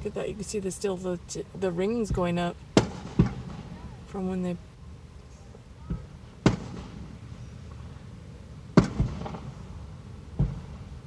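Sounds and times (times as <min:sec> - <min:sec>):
fireworks bursting with booms: 0:01.9 - 0:04.2, 0:05.8 - 0:08.0, 0:08.7 - 0:11.0.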